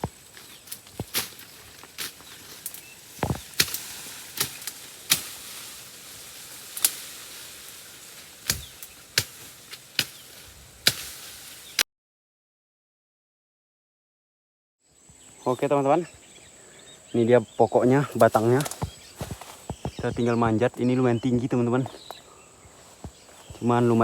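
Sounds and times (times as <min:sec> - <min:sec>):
steady background hiss: 0:00.0 - 0:11.8
twigs snapping underfoot: 0:00.0 - 0:11.8, 0:18.1 - 0:20.1.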